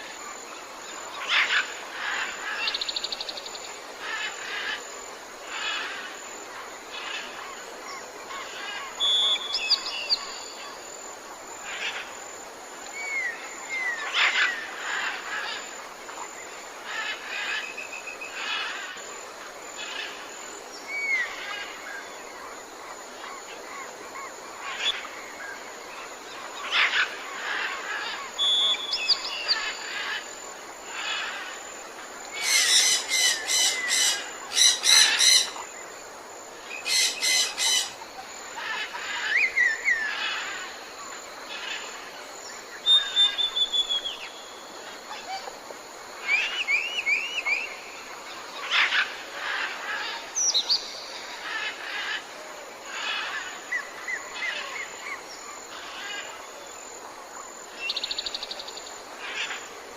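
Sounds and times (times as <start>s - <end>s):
background hiss: 0.0s - 59.9s
birds chirping and calling: 32.2s - 35.7s, 36.7s - 40.8s.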